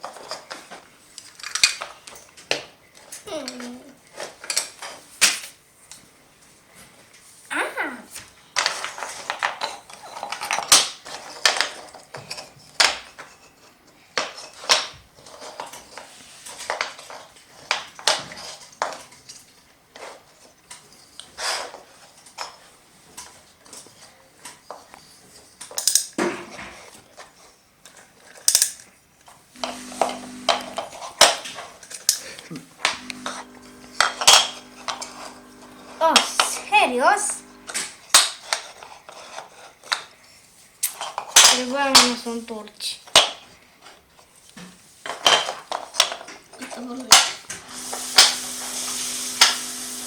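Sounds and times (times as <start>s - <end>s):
wooden toy train pieces clattering: 0.0s - 5.0s, 8.6s - 29.4s, 38.1s - 40.2s, 41.0s - 42.4s, 45.0s - 47.4s
steady low hum: 32.8s - 38.0s.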